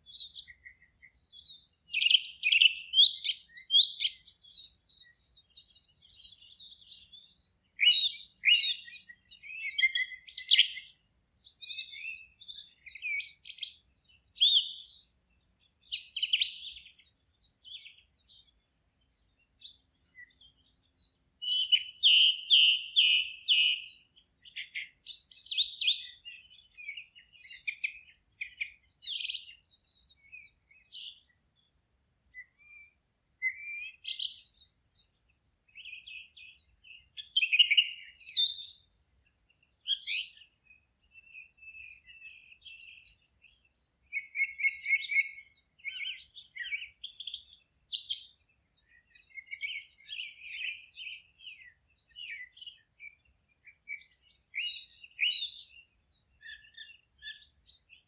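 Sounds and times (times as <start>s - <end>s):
songbirds singing: 0.0s - 58.0s.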